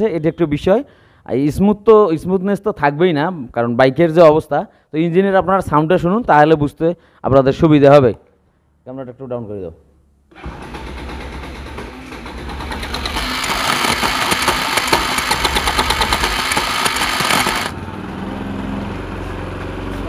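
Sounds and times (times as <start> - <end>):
motorcycle engine revving roughly: 10.4 - 17.8.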